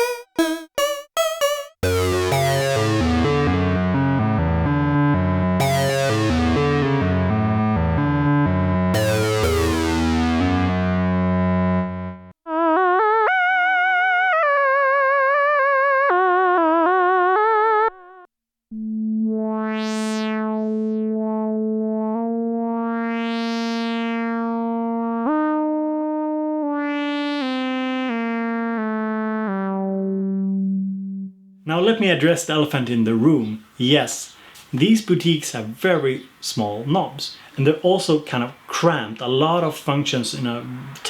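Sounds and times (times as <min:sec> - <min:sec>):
buzzy synth tone with filter sweeps: 0:00.0 - 0:12.3, 0:18.8 - 0:31.3
synth lead melody with vibrato: 0:00.0 - 0:17.9.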